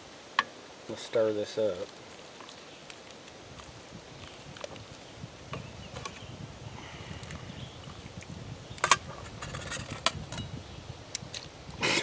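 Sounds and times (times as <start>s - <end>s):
utensil scraping a pan: 8.8s - 10.5s.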